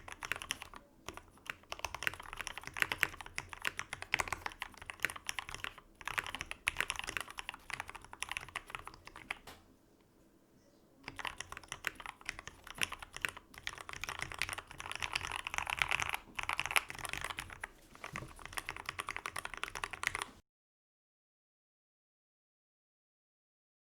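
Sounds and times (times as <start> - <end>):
mechanical keyboard typing: 0.0 - 9.5, 11.0 - 20.4.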